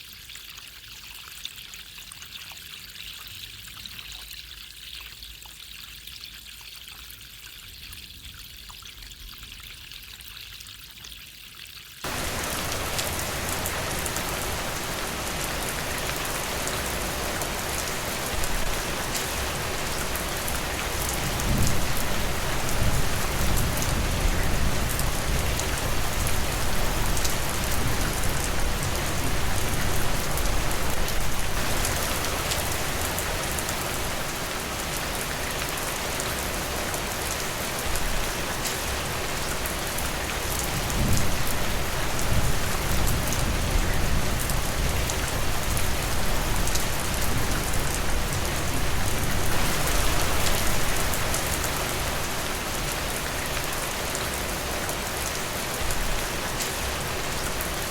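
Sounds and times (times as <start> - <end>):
steady rain falling: 12.0 - 57.9.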